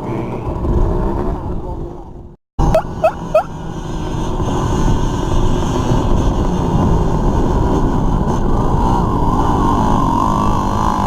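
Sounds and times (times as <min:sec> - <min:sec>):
dirt bike engine running: 0:02.6 - 0:11.0.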